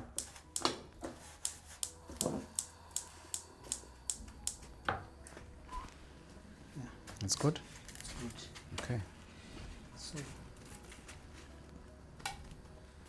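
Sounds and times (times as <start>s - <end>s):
short sharp clicks: 1.4s - 4.7s.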